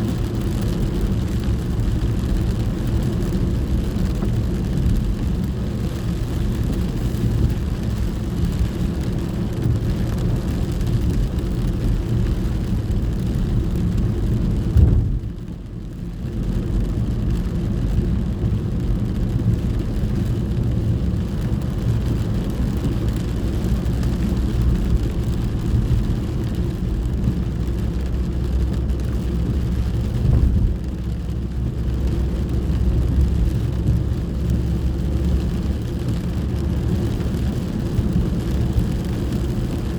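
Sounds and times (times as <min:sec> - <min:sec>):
rain and wet tyres hissing: 0:00.0 - 0:39.9
road and engine rumble: 0:00.0 - 0:39.9
brief thump: 0:14.8 - 0:15.2.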